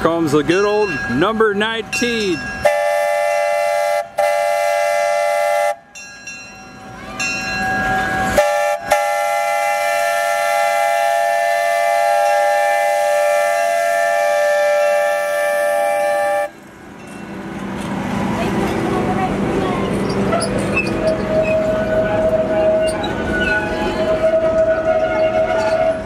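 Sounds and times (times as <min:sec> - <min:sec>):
train whistle chord: 0:02.6 - 0:05.9, 0:08.3 - 0:16.5, 0:21.4 - 0:26.0.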